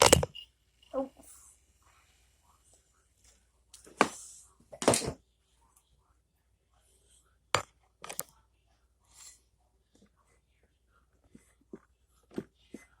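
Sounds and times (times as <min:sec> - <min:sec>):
sharp clicks and knocks: 0:00.0 - 0:00.4.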